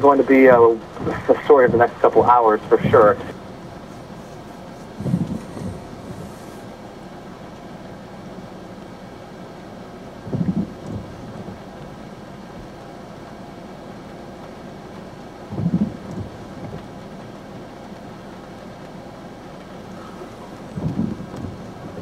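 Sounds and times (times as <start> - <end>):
low rumbles: 0.0 - 22.0
outdoor rushing noise: 1.0 - 6.9, 19.8 - 22.0.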